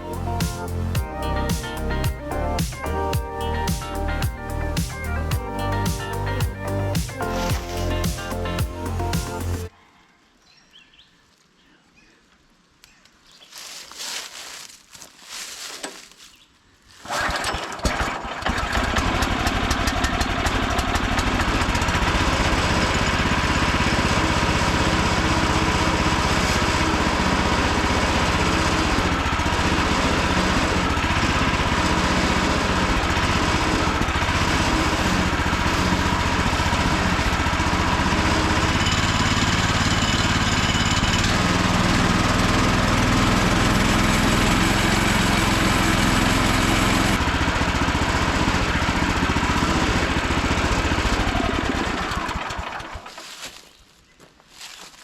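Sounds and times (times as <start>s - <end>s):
petrol engine running: 0.0s - 9.7s, 17.0s - 53.2s
recoil starter pull: 17.0s - 47.7s, 48.5s - 53.4s.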